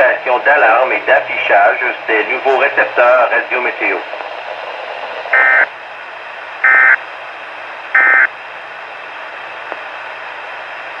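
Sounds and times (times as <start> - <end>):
radio static: 0.0 - 5.7.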